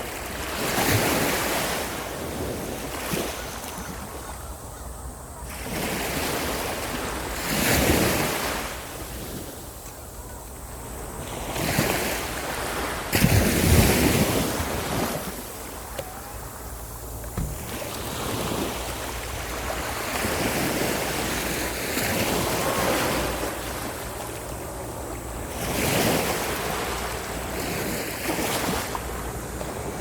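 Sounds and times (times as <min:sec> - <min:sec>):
sea waves breaking on beach: 0:00.0 - 0:04.4, 0:05.5 - 0:30.0.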